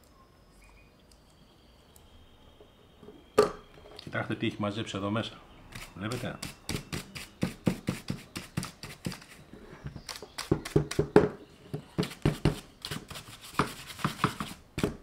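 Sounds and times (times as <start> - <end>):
small brush scrubbing: 12.0 - 14.6.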